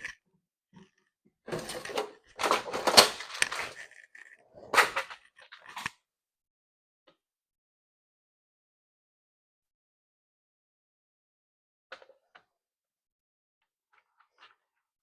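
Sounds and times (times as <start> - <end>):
small parts and tools clattering: 1.5 - 5.9.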